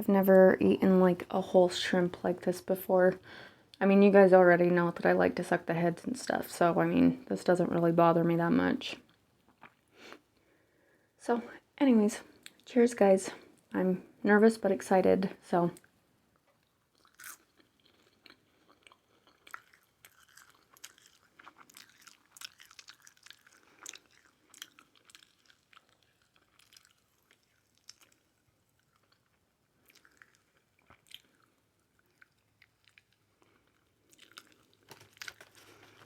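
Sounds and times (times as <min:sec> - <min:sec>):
faint chewing crunches: 0:09.0 - 0:10.5, 0:15.8 - 0:36.0.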